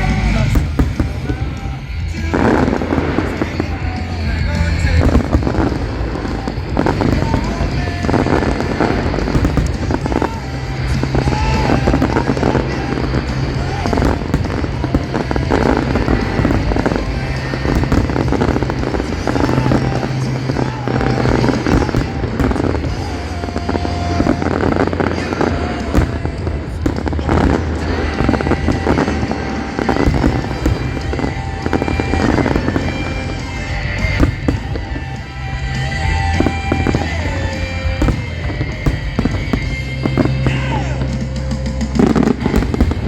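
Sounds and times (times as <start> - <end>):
fireworks crackling bangs: 0.0 - 43.0
loud music: 0.0 - 43.0.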